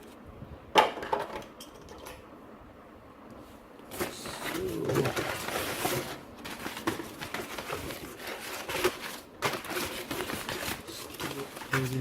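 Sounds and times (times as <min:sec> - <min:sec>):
plastic parts rustling and clicking: 0:03.9 - 0:12.0.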